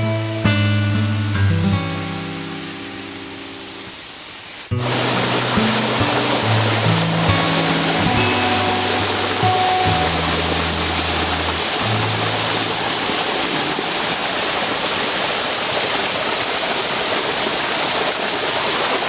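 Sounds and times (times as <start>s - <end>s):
waterfall rushing: 1.6s - 19.0s
low background music: 4.8s - 13.3s.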